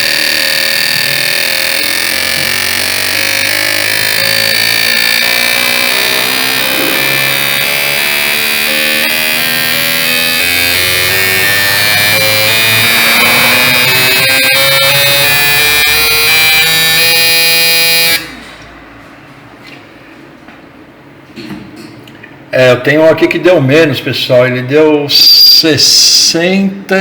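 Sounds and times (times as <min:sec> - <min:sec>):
electronic music with synth melody: 0:00.0 - 0:18.4.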